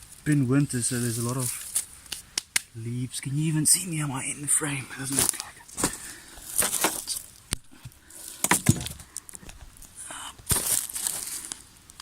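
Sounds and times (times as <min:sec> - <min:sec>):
dry leaves rustling and crunching: 0:00.0 - 0:02.1, 0:09.8 - 0:11.6.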